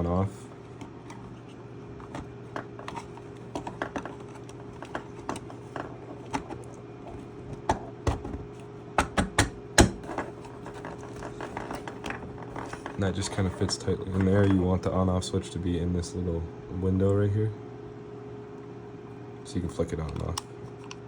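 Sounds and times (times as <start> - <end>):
steady low hum: 0.0 - 21.0
battery pack clicks and knocks: 9.0 - 10.1.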